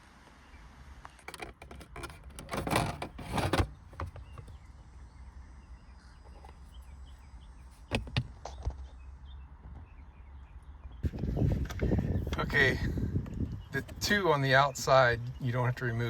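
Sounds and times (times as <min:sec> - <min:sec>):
plastic trim rubbing and scraping: 0:01.2 - 0:04.6.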